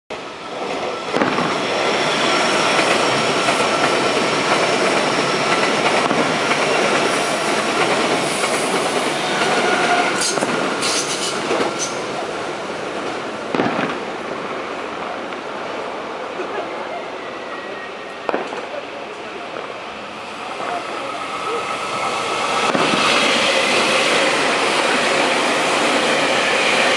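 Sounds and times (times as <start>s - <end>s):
wheels squealing on rails: 6.9s - 12.2s, 16.4s - 18.7s.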